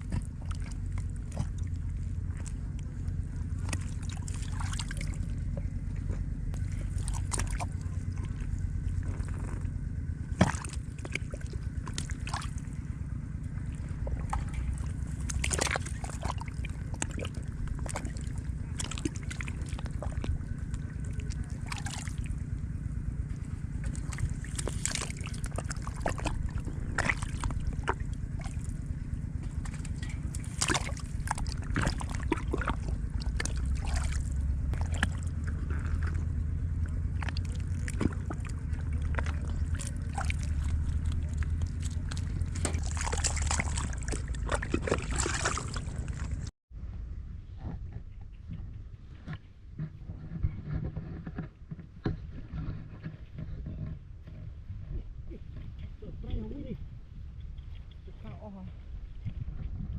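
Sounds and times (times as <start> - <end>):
shallow water splashing: 0.0 - 46.5
low rumble: 0.0 - 59.9.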